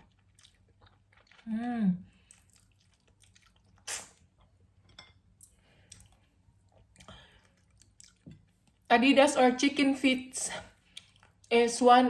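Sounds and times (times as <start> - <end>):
person chewing: 0.0 - 8.9, 10.8 - 11.5.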